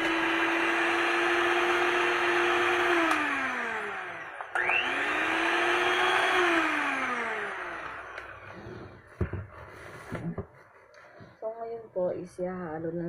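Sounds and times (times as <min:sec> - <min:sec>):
electric hand mixer running: 0:00.0 - 0:09.4.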